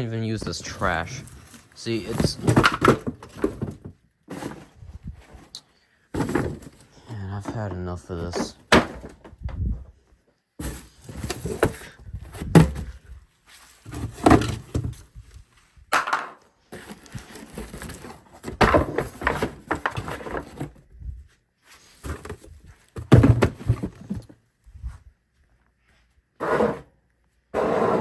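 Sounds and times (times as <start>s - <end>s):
objects thudding and knocking: 0.0s - 5.5s, 6.1s - 9.9s, 10.6s - 13.2s, 13.8s - 15.2s, 15.9s - 20.9s, 22.0s - 24.4s, 26.4s - 26.9s
rustling: 0.2s - 9.2s.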